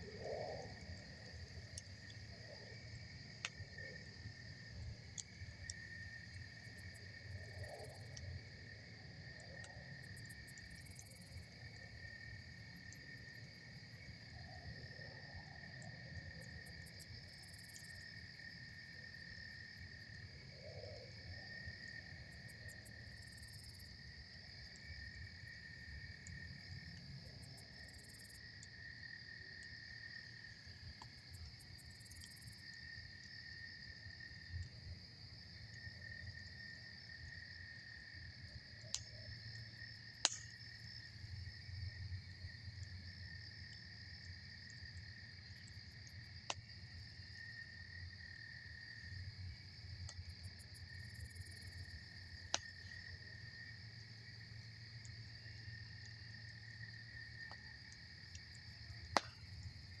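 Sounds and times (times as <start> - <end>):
campfire crackling: 0.0 - 13.9, 24.2 - 47.3, 50.9 - 60.0
night insects trilling: 0.0 - 60.0
burning wood popping: 40.2 - 40.6.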